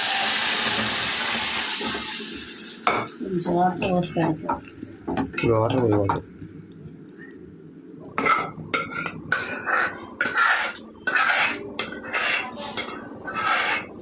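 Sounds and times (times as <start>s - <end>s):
metal ladle scraping cooking pot: 8.2s - 14.0s.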